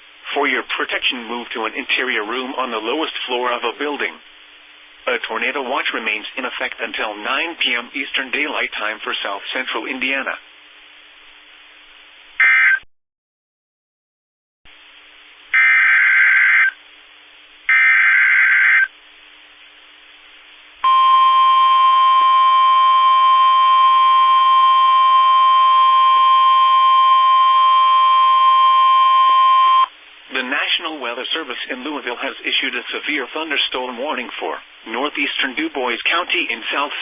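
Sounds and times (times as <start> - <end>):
steady warning alarm tone: 15.6 - 16.8, 17.7 - 18.9, 20.8 - 29.9.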